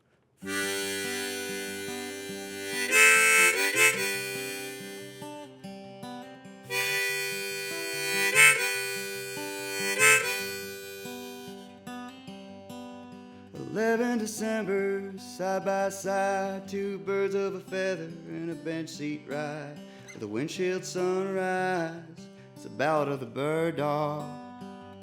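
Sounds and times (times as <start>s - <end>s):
acoustic guitar: 0.0s - 25.0s
harmonica long held notes: 0.4s - 5.6s, 6.7s - 11.7s.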